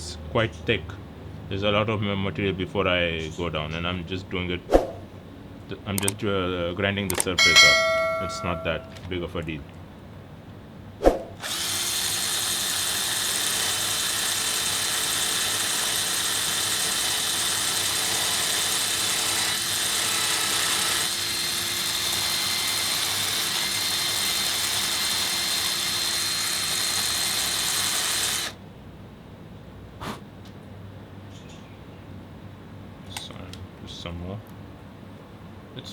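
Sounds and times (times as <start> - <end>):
electric drill grinding metal: 11.4 - 28.6.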